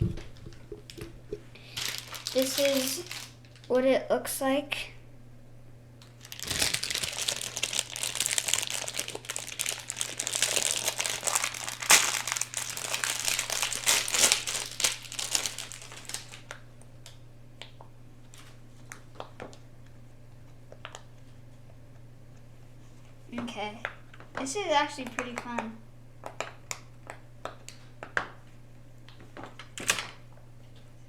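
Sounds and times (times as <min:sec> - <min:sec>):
plastic packaging crinkling: 0:00.0 - 0:03.8, 0:06.0 - 0:16.6.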